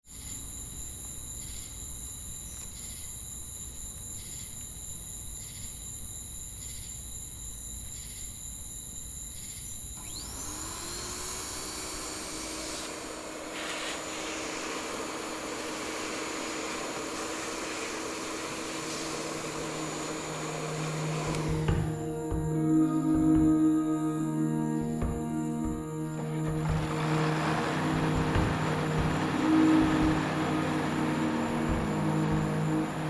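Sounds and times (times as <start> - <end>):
machine whining and humming: 9.9 - 33.0.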